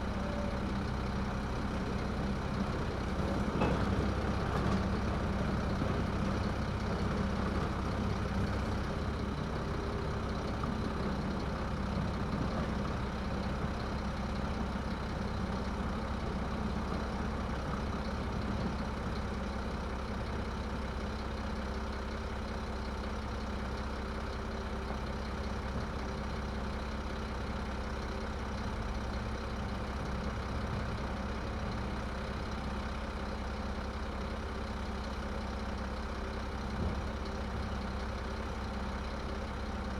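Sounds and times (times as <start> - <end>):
garbage truck engine idling: 0.0 - 39.9.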